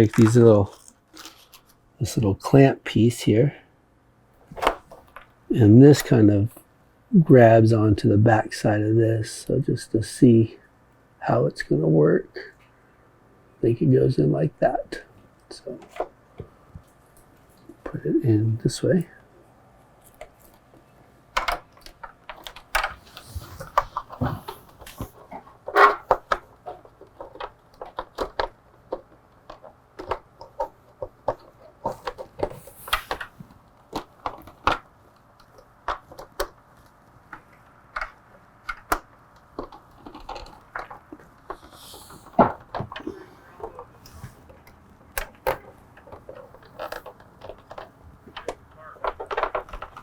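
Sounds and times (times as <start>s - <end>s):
hands clicking plastic parts: 0.0s - 1.7s, 20.0s - 50.0s.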